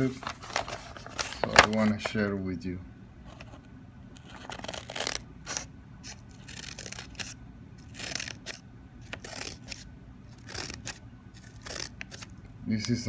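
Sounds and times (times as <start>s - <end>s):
scissors scraping strokes: 4.2s - 12.3s.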